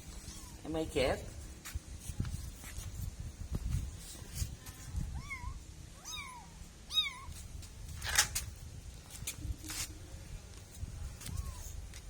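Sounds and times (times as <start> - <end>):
kitten meowing: 5.2 - 7.4.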